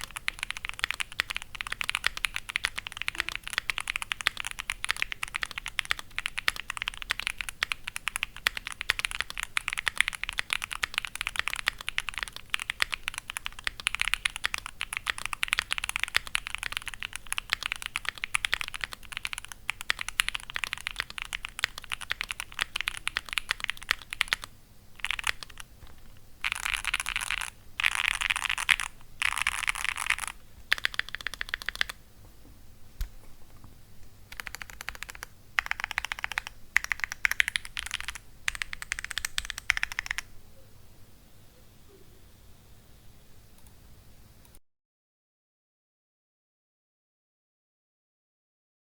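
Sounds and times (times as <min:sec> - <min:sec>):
mechanical keyboard clacking: 0:00.0 - 0:32.0, 0:34.3 - 0:40.3.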